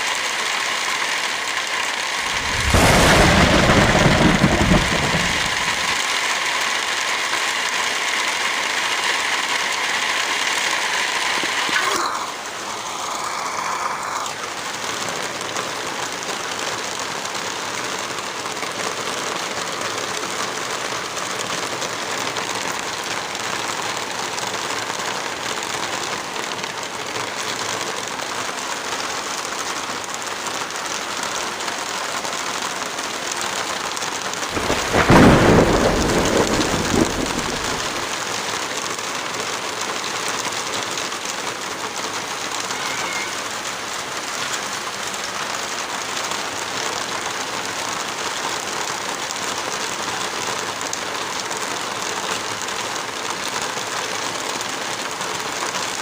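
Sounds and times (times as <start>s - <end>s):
heavy rain: 0.0s - 56.0s
thunder rumbling: 2.2s - 6.2s, 34.5s - 38.3s.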